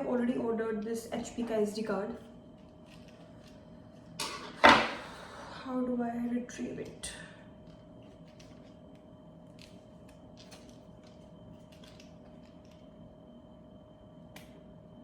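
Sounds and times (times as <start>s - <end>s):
plastic packaging crinkling: 7.6s - 13.1s.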